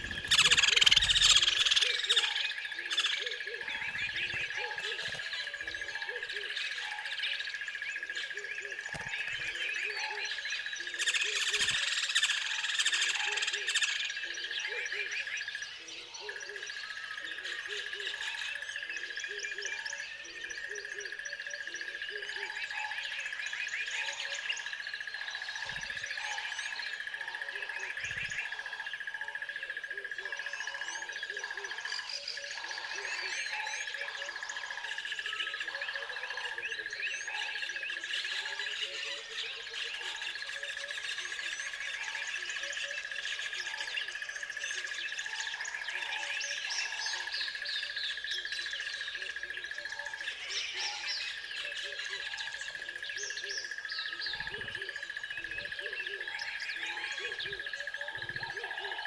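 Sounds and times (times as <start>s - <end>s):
short lower bird calls: 0.0s - 3.4s
songbirds chirping and twittering: 0.0s - 59.0s.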